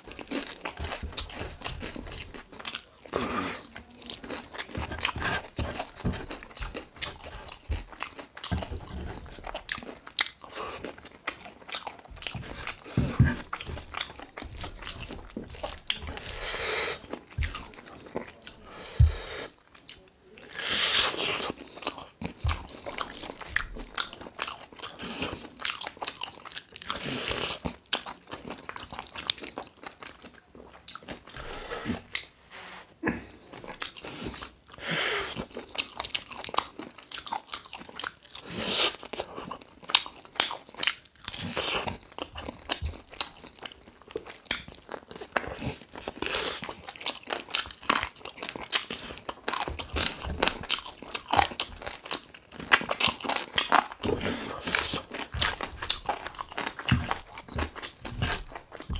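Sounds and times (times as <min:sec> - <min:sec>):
person chewing and crunching: 0:00.0 - 0:32.4, 0:33.0 - 0:58.9.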